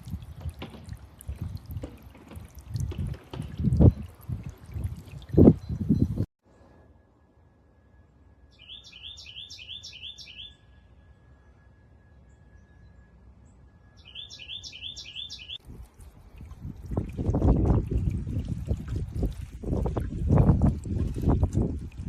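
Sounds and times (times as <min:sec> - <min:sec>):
songbird chirping: 0:08.1 - 0:15.6.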